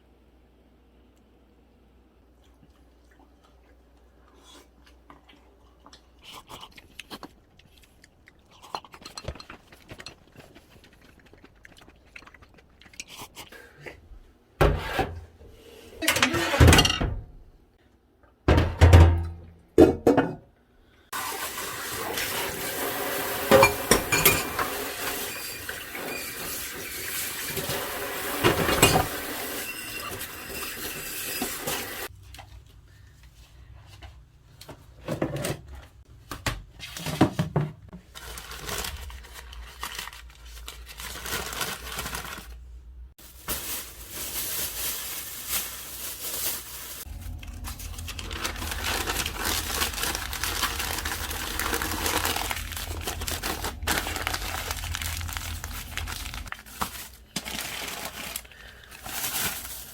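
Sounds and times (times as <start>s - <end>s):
tap water running into sink: 21.2s - 32.0s
water gushing: 21.2s - 32.1s
dishes and utensils clinking: 23.5s - 25.4s, 28.4s - 32.1s.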